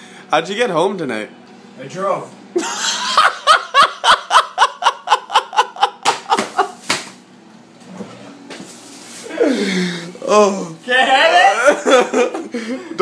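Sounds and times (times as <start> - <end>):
person laughing: 2.6 - 6.8, 11.3 - 13.0.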